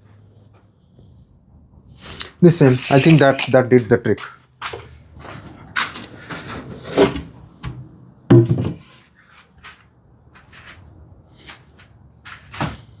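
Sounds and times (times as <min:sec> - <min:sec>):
wood rubbing and scraping: 0:02.6 - 0:03.6.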